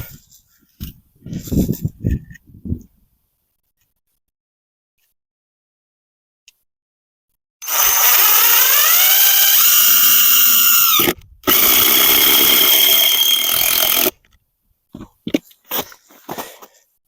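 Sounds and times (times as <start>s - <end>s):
electric power tool running: 7.6s - 14.1s.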